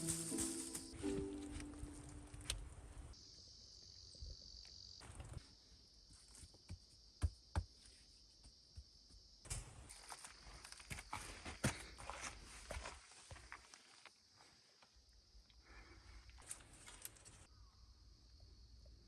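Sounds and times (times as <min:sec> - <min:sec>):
high-pitched insect chorus: 0:00.0 - 0:01.0, 0:03.1 - 0:06.2.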